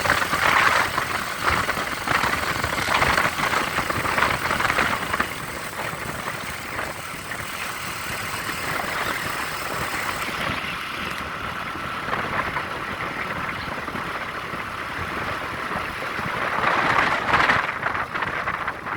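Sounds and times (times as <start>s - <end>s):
motorcycle engine running: 0.0s - 18.9s.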